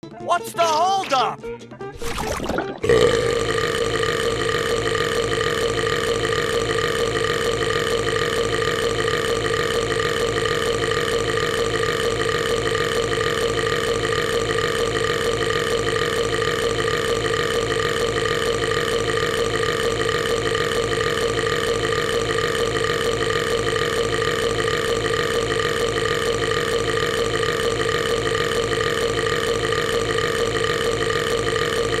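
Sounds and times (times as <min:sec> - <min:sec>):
cartoon burp: 0:02.0 - 0:32.0.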